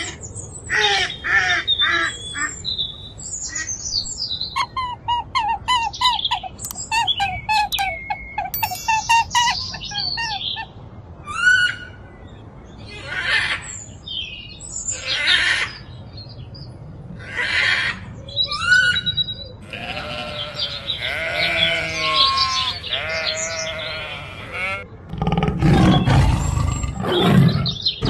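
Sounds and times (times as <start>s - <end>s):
bird chirps: 6.0s - 10.7s
long wavering bleat: 19.6s - 24.9s.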